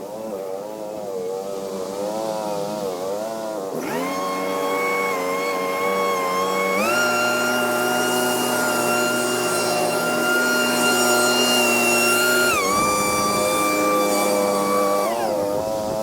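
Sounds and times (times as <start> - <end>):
leaf blower whining: 3.5 - 16.0.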